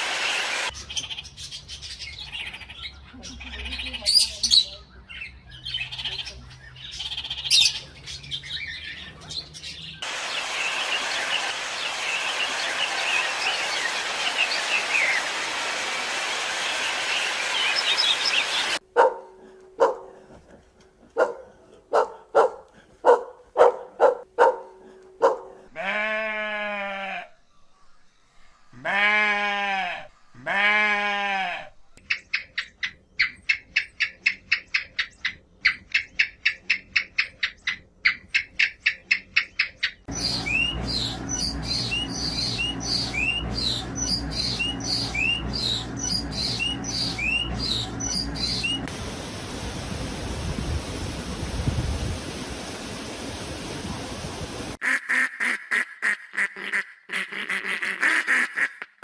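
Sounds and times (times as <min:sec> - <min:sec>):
birds chirping: 0:00.4 - 0:15.5, 0:16.3 - 0:25.6, 0:32.0 - 0:48.9
steady hiss: 0:10.0 - 0:18.8, 0:48.8 - 0:54.8
dog barking: 0:18.9 - 0:20.3, 0:21.2 - 0:25.7
goat bleating: 0:25.7 - 0:27.3, 0:28.8 - 0:31.8.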